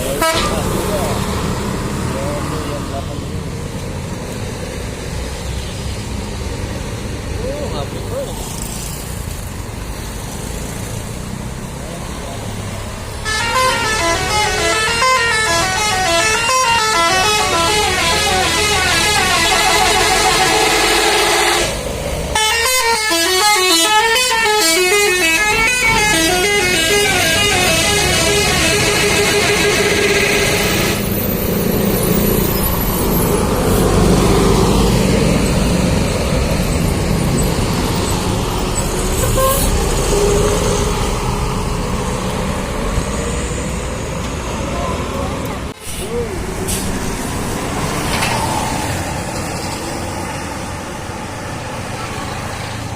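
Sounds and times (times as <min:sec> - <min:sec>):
bus engine and tyres passing: 0:00.0 - 0:52.9
musical air horn melody: 0:13.2 - 0:21.8, 0:22.4 - 0:31.0, 0:39.2 - 0:39.8.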